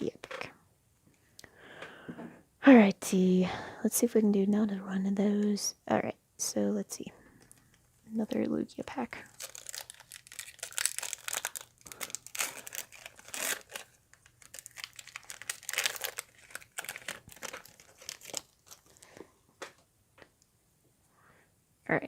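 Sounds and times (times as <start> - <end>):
foil wrapper crinkling and tearing: 7.5 - 19.2.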